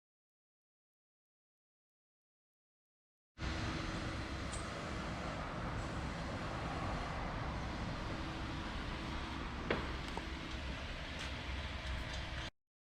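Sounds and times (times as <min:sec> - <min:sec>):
car engine rumble: 0:03.4 - 0:12.5
road noise: 0:03.4 - 0:12.5.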